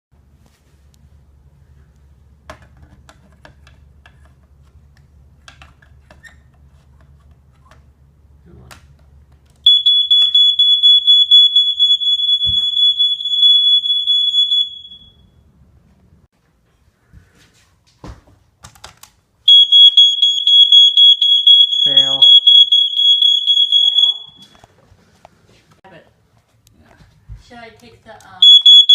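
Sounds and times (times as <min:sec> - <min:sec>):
smoke alarm tone: 0:09.7 - 0:15.5, 0:19.5 - 0:24.6, 0:28.4 - 0:28.9.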